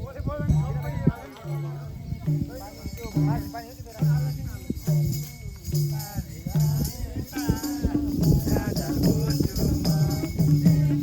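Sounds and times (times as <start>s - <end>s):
person singing: 6.5s - 11.0s.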